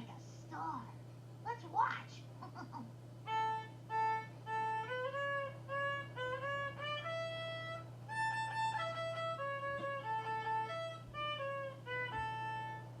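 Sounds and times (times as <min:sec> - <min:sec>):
steady low hum: 0:00.0 - 0:13.0
violin melody: 0:03.3 - 0:13.0.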